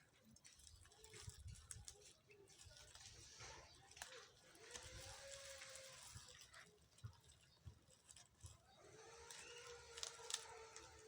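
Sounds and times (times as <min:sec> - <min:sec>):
handling clicks and rustles: 0:00.0 - 0:08.6.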